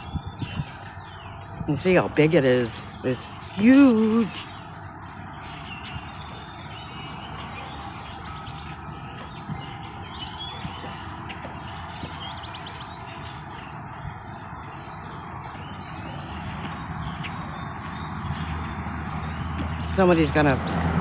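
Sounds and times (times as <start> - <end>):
small birds chirping: 0.0 - 21.0.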